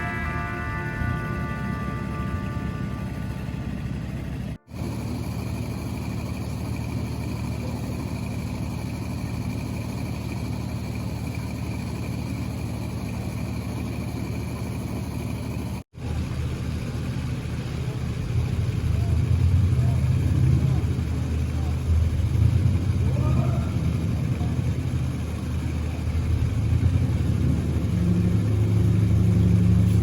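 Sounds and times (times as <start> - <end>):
faint high whine: 0.0 - 8.0
engine running steadily: 0.0 - 30.0.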